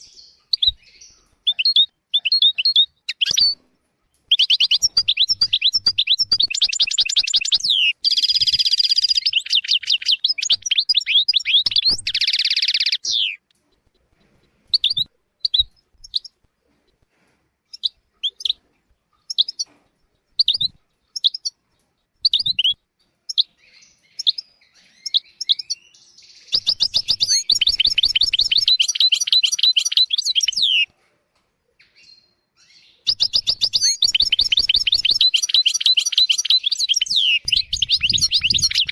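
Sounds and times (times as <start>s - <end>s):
goldfinch singing: 0.0s - 3.6s, 4.3s - 13.4s, 23.4s - 30.9s, 32.6s - 38.9s.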